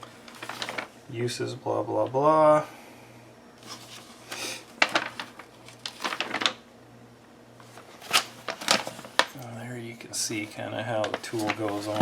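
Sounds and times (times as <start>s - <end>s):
paper-like rustling: 0.0s - 0.9s, 3.6s - 6.6s, 7.6s - 9.4s, 10.3s - 12.0s.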